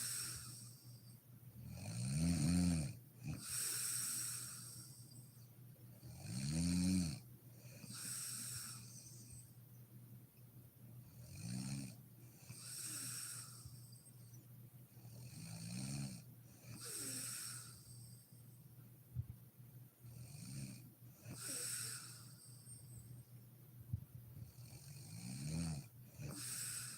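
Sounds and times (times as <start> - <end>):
woman snoring: 0.0 - 1.0, 1.7 - 5.0, 6.1 - 7.2, 11.2 - 13.8, 15.1 - 18.2, 20.2 - 22.8, 24.5 - 26.9.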